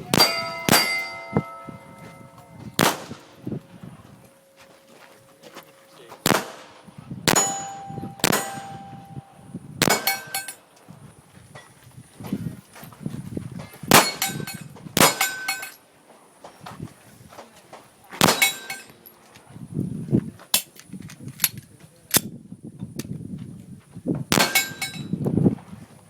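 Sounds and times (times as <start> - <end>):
pistol shots: 0.1 - 3.5, 6.2 - 9.2, 9.8 - 10.6, 13.9 - 15.6, 18.2 - 18.9, 24.3 - 25.0.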